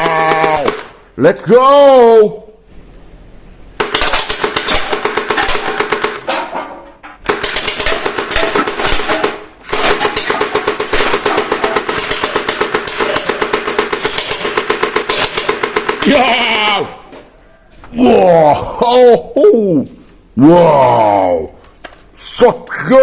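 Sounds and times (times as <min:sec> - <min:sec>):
toy machine gun electronic firing: 0:03.8 - 0:06.3, 0:07.2 - 0:16.2.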